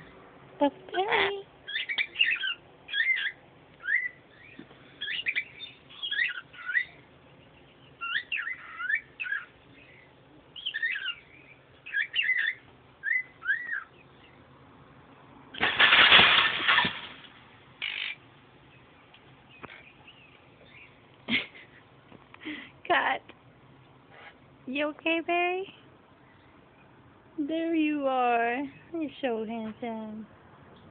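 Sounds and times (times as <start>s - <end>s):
songbird whistling and chirping: 1.7s - 14.4s.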